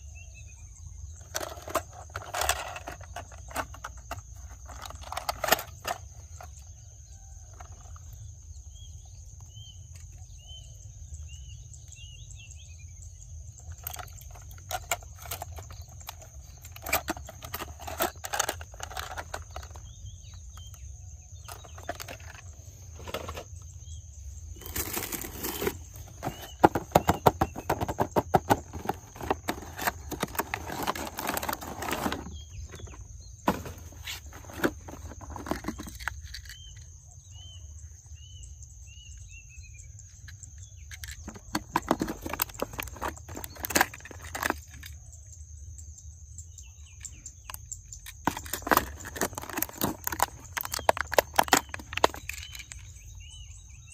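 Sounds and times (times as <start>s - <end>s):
toy cars clicking and rattling: 1.2s - 6.6s, 13.6s - 20.8s, 24.6s - 36.9s, 40.1s - 45.0s, 47.0s - 53.0s.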